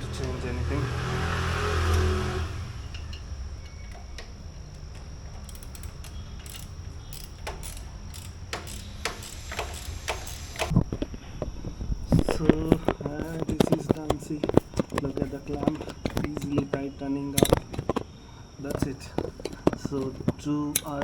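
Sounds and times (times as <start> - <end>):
ratchet wrench clicking: 2.9 - 10.7, 13.2 - 18.0, 18.6 - 21.0.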